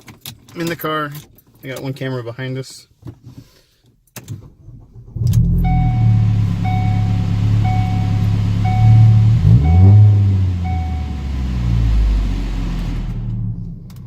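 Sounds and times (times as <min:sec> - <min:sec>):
car engine starting and idling: 0:04.4 - 0:14.0
dashboard warning chime: 0:05.6 - 0:11.9.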